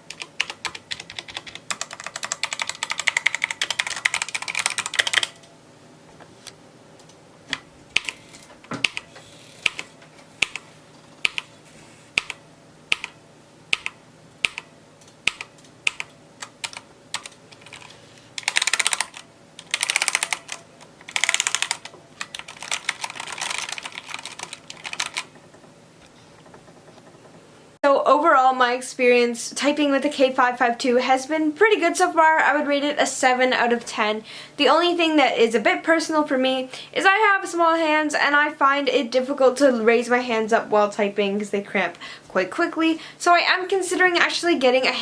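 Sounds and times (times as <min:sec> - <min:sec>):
mechanical keyboard typing: 0:00.1 - 0:05.5, 0:07.0 - 0:11.5, 0:12.2 - 0:25.6.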